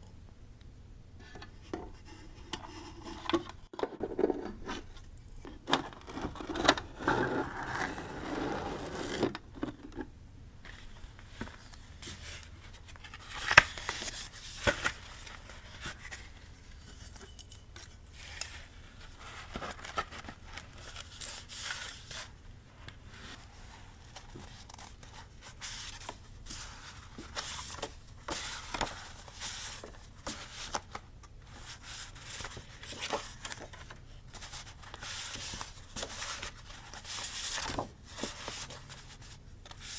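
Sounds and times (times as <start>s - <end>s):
paper rustling and scraping: 1.9s - 9.9s, 10.6s - 17.3s, 18.1s - 39.9s.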